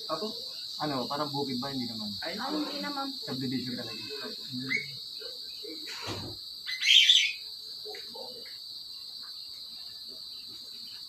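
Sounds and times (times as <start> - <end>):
crickets trilling: 0.0 - 11.0
faint thump: 5.9 - 6.4
bird chirp: 6.6 - 8.4.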